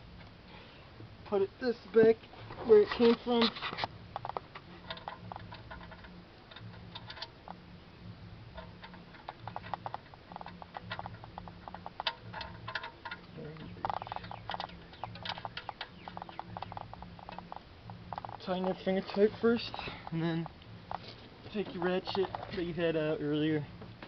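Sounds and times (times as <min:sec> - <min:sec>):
metal parts clicking and tapping: 0:03.0 - 0:07.6, 0:08.5 - 0:23.0.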